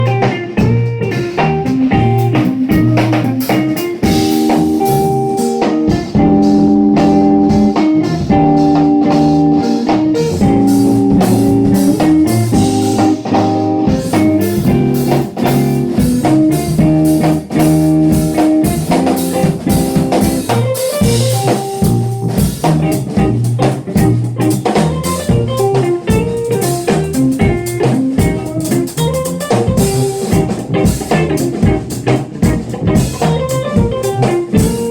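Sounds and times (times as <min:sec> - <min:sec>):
drum kit groove: 0:00.0 - 0:34.9
electric guitar: 0:00.0 - 0:34.9
tuba bass line: 0:04.0 - 0:25.8.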